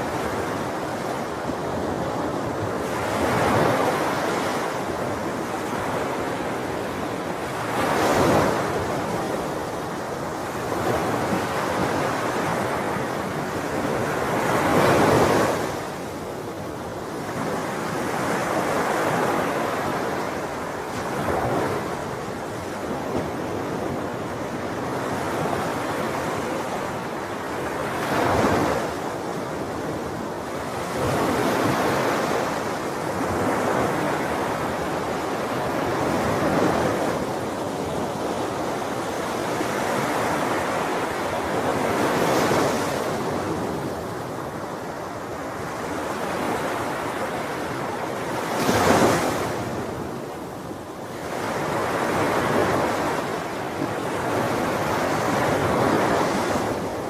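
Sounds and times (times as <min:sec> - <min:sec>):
sea waves breaking: 0:17.2 - 0:57.0.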